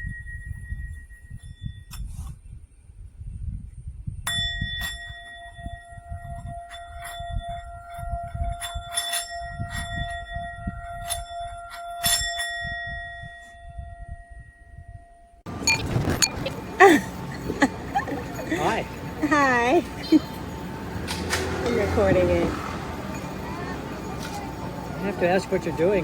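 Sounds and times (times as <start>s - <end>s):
singing bowl ringing: 4.3s - 15.8s
low handling rumble: 15.5s - 26.0s.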